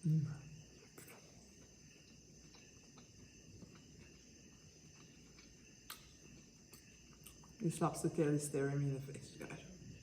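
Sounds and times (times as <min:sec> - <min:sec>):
faint high-pitched tone and hiss: 0:00.0 - 0:10.0.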